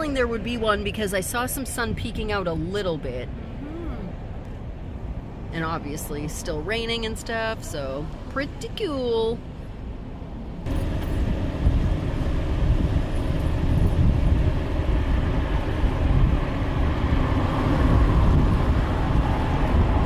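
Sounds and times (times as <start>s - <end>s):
wind buffeting microphone: 10.6s - 20.0s.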